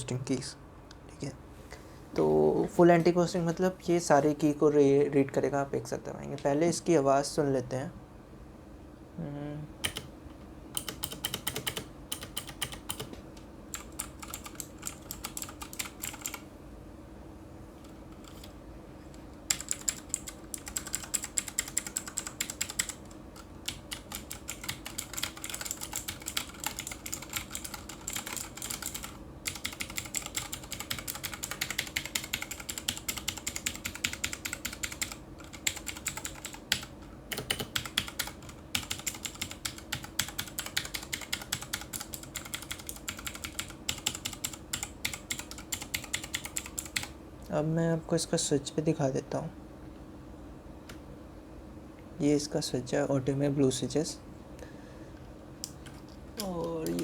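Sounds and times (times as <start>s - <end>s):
faint steady hum: 0.0s - 57.0s.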